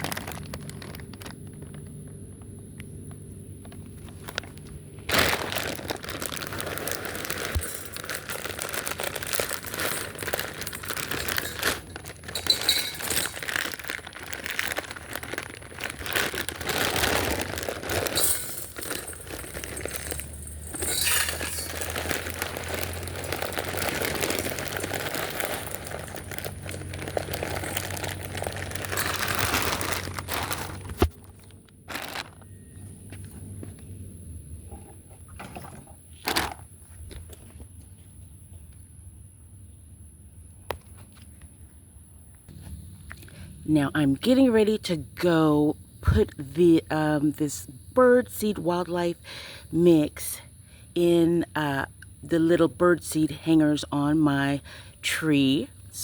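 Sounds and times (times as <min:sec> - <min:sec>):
packaging crinkling and rustling: 0:00.0 - 0:02.2, 0:03.6 - 0:33.8, 0:36.2 - 0:37.4.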